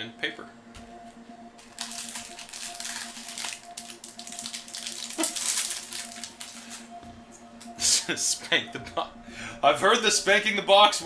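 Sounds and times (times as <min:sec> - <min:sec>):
faint background music: 0:00.0 - 0:11.0
cards being handled: 0:01.6 - 0:06.9
foil wrappers crinkling: 0:01.6 - 0:06.9.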